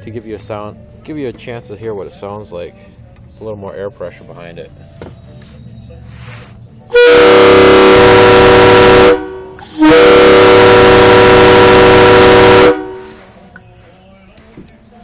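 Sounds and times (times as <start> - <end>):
loud distorted air horn blasts: 6.9 - 13.2.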